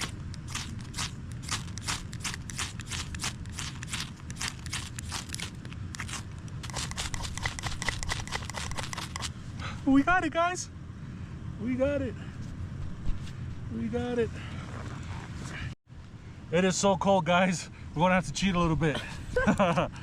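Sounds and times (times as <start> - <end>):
ferro rod scraping: 0.0 - 9.3.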